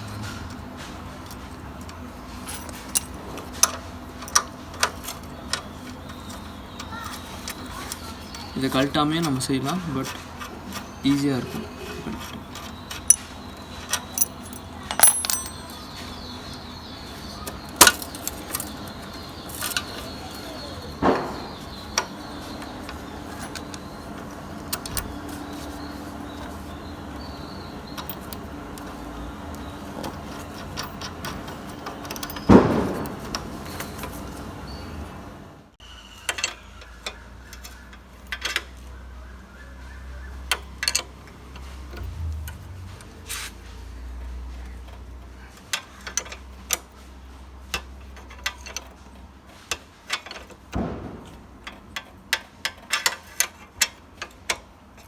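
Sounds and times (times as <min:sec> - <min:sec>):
metal clinks of spanners and bolts: 0:02.4 - 0:05.2, 0:08.6 - 0:16.2, 0:24.7 - 0:25.2, 0:27.9 - 0:28.5, 0:29.9 - 0:34.1.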